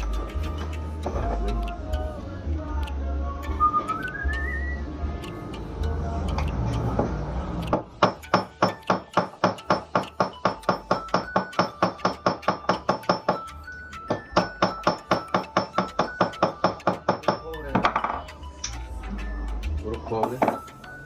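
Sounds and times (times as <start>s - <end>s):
hammer tapping metal: 5.2s - 20.9s.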